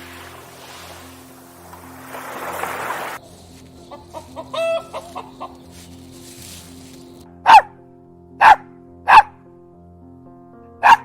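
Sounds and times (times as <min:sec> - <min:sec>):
rushing noise: 0:00.0 - 0:07.2
chicken clucking: 0:03.2 - 0:06.1
dog bark: 0:07.4 - 0:07.7, 0:08.4 - 0:09.4, 0:10.8 - 0:11.0.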